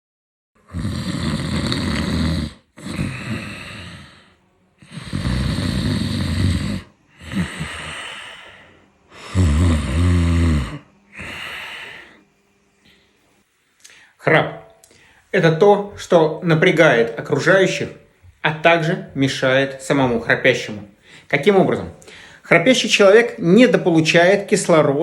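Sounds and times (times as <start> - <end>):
person snoring: 0.6 - 12.2.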